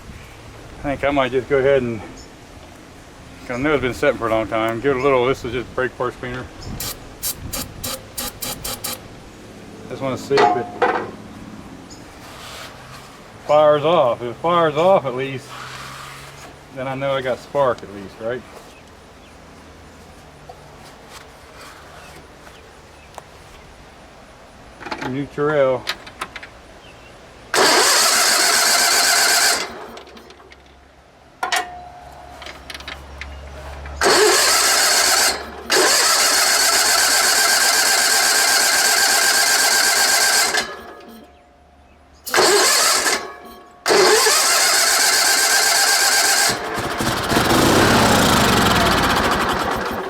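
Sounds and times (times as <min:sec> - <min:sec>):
engine firing briefly: 0:06.8 - 0:09.0, 0:27.5 - 0:30.2, 0:34.0 - 0:41.2, 0:42.3 - 0:50.0
engine starter cranking: 0:06.8 - 0:09.1, 0:27.5 - 0:30.6, 0:34.0 - 0:41.4, 0:42.3 - 0:50.0.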